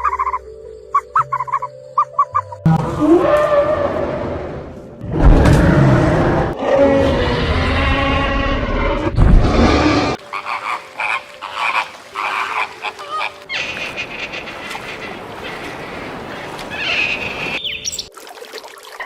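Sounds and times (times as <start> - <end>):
higher animal call: 10.2 - 15.8.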